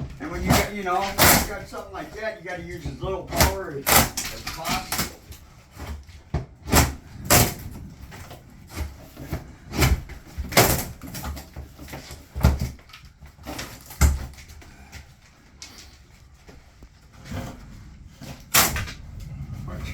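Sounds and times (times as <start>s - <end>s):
wood knocks and bangs: 0.0s - 15.0s.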